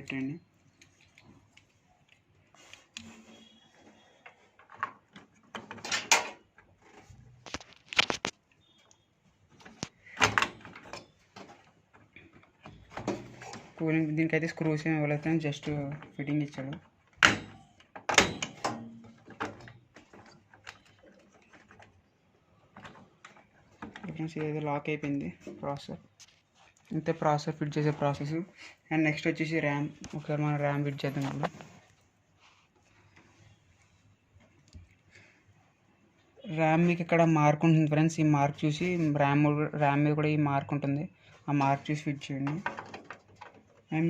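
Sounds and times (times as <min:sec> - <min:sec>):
clatter of cooler on motherboard: 0:04.6 - 0:08.4, 0:42.4 - 0:43.9.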